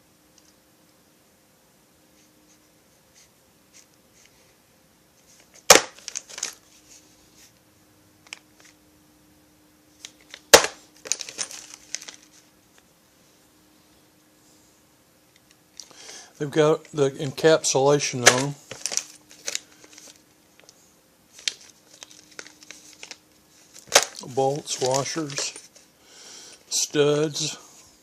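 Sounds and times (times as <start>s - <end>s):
faint steady hum: 0.0s - 28.0s
plastic crinkling: 5.7s - 6.6s, 10.0s - 12.5s, 18.2s - 20.7s, 21.3s - 25.9s
metal parts rattling: 11.0s - 12.3s, 23.8s - 25.7s.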